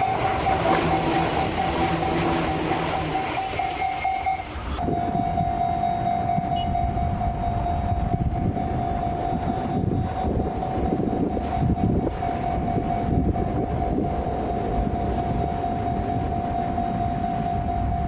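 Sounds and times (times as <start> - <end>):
train wheels rumbling on rails: 0.0 - 4.8
steady high tone: 0.0 - 18.0.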